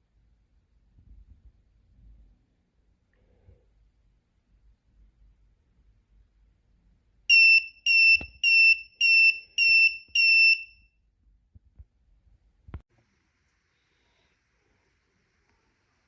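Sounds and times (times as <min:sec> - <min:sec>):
high-pitched alarm beeps: 0:07.3 - 0:10.8.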